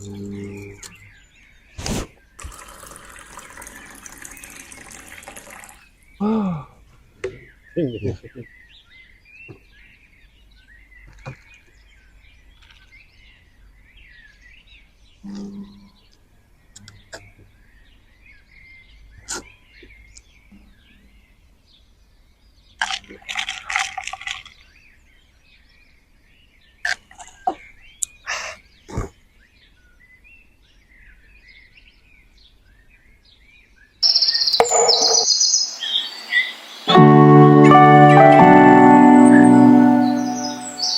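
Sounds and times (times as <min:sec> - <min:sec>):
birds chirping: 0:00.0 - 0:12.9, 0:34.0 - 0:40.9
small birds chirping: 0:00.0 - 0:23.4, 0:24.2 - 0:40.9.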